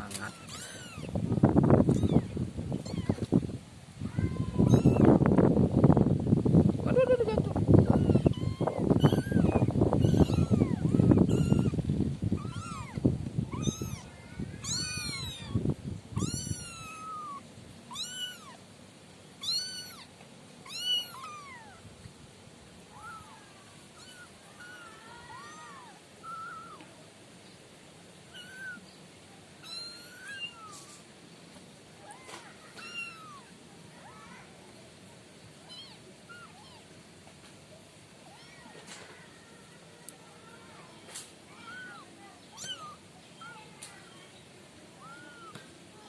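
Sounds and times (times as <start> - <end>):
kittens mewing: 0.0 - 3.4, 4.0 - 5.2, 6.8 - 18.6, 19.4 - 21.9, 22.9 - 26.9, 28.3 - 28.8, 29.6 - 31.1, 32.0 - 34.5, 35.6 - 36.9, 41.5 - 43.6, 45.0 - 45.7.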